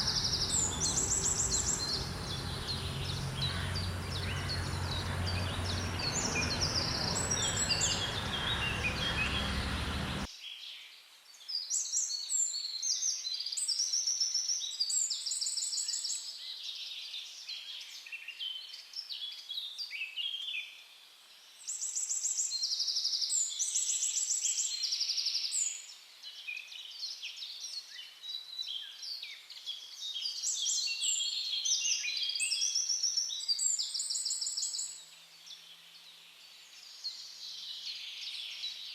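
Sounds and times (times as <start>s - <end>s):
loud even background noise: 0.0s - 10.3s
songbirds chirping and trilling: 0.0s - 38.9s.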